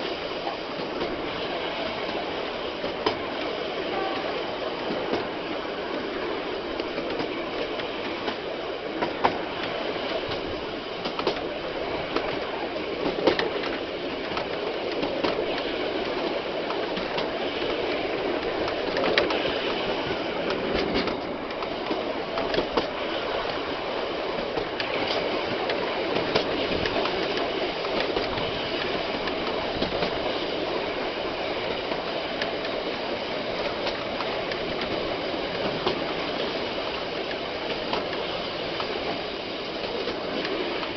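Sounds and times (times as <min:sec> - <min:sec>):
train wheels rumbling on rail: 0:00.0 - 0:40.9.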